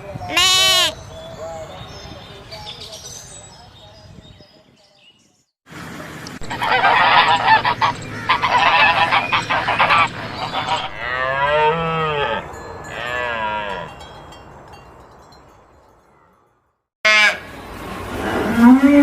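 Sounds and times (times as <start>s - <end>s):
geese honking: 6.4s - 12.4s, 17.1s - 17.6s
cow mooing: 8.3s - 14.0s.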